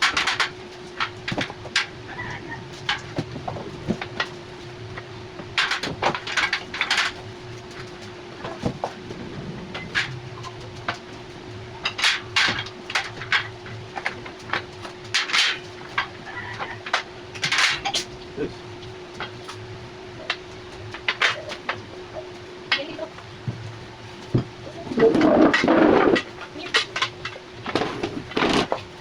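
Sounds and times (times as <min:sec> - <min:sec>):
steady hum: 0:00.0 - 0:29.0
metal parts knocking and clattering: 0:05.6 - 0:07.2, 0:11.8 - 0:18.0, 0:24.3 - 0:28.9.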